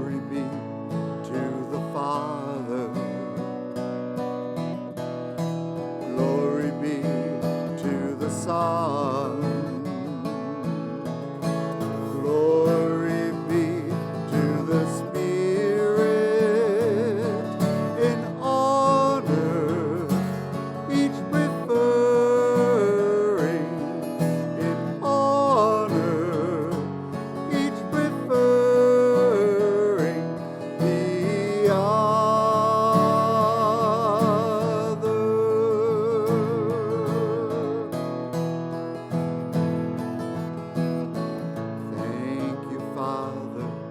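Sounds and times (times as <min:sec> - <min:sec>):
person singing a slow hymn: 0:00.0 - 0:03.2, 0:06.0 - 0:10.9, 0:11.8 - 0:38.1, 0:41.8 - 0:43.8
acoustic guitar: 0:00.0 - 0:43.9.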